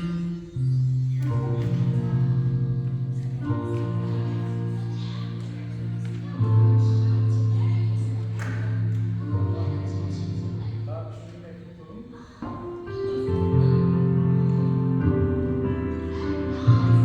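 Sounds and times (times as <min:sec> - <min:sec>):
keyboard chords: 0:12.5 - 0:17.0.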